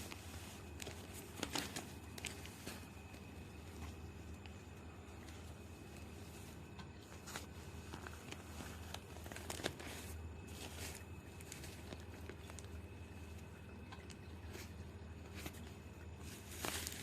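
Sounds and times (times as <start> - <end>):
newspaper rustling and crinkling: 0.0 - 13.5, 14.5 - 17.0.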